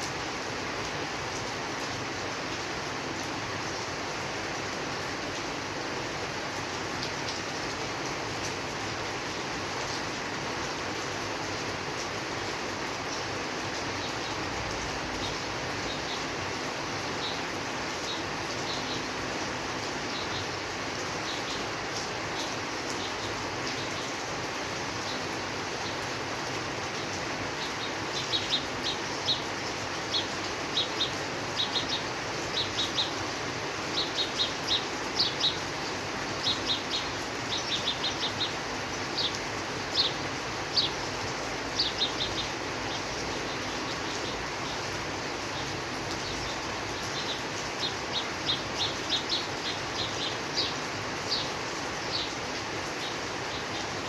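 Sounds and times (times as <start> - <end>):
steady rain hiss: 0.0 - 54.0
small bird chirping: 13.1 - 19.3, 19.9 - 24.3, 26.8 - 54.0.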